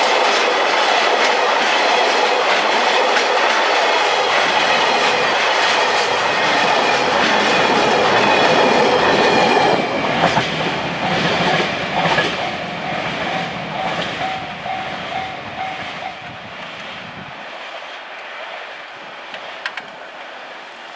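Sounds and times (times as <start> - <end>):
level-crossing warning bell: 0.0 - 16.5
freight train wheels clattering: 0.0 - 18.1.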